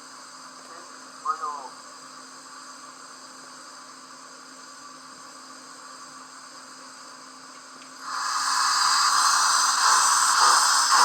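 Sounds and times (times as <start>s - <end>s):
faint steam hiss: 7.9s - 11.0s
loud steam whistle: 8.1s - 11.0s.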